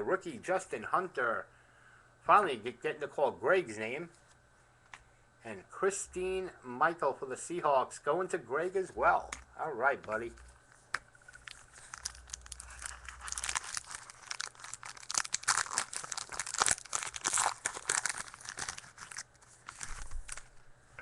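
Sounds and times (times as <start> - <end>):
wrapper tearing and crinkling: 11.3 - 20.6.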